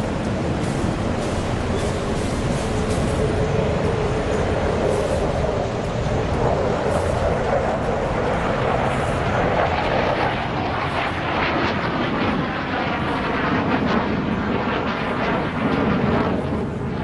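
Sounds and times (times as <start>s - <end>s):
jet engine roar: 0.0s - 17.0s.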